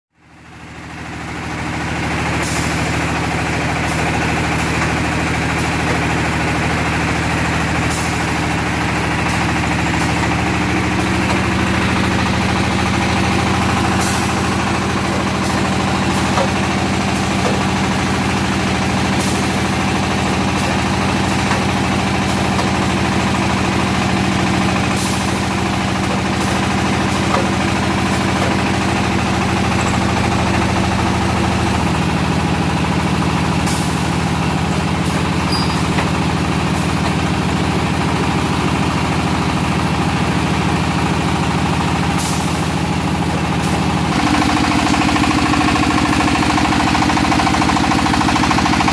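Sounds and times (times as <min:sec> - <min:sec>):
brick molding machine drone: 0:00.7 - 0:48.9.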